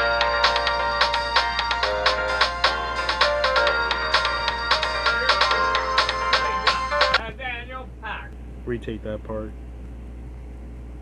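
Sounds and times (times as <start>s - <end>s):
cell phone ringtone melody: 0.0s - 7.2s.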